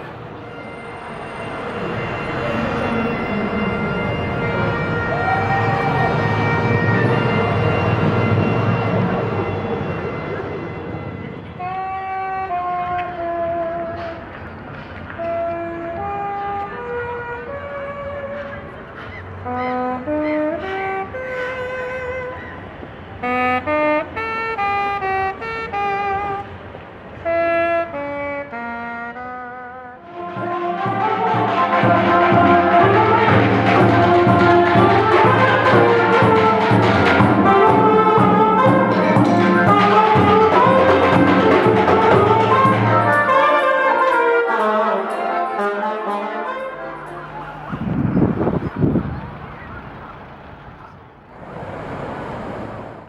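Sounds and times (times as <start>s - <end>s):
wind instrument melody: 0.0s - 14.4s, 15.1s - 26.6s, 27.2s - 51.2s
steady background noise: 0.0s - 28.6s, 46.4s - 53.0s.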